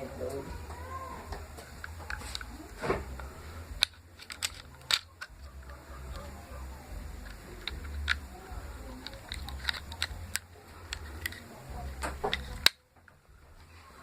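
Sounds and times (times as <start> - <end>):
hard plastic parts clicking: 1.3 - 6.4, 7.2 - 13.2.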